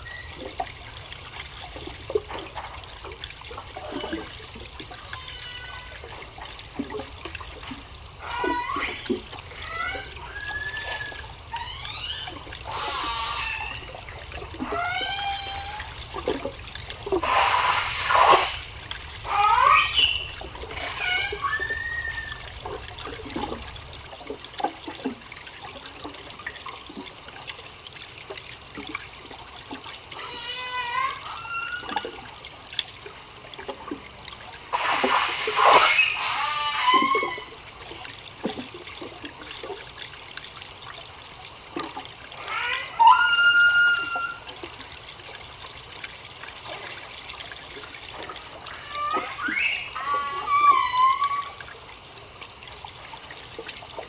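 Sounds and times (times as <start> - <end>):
whale whistles and squeaks: 0.0 - 0.6, 5.0 - 6.1, 8.2 - 14.0, 14.6 - 16.0, 17.2 - 18.6, 19.2 - 22.6, 30.2 - 32.2, 34.7 - 37.6, 42.4 - 44.6, 48.4 - 51.7
rushing water: 0.0 - 54.0.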